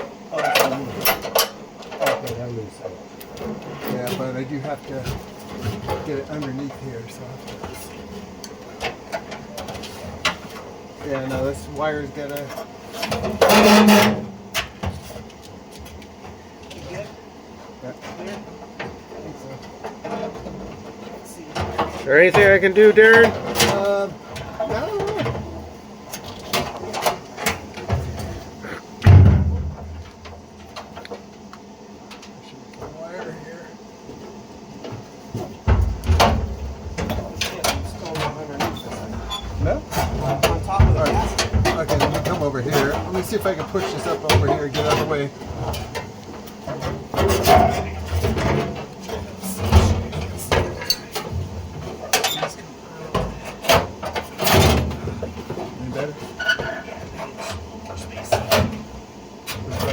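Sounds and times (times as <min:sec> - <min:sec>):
parts knocking and clunking: 0:21.6 - 0:24.5, 0:34.8 - 0:55.8.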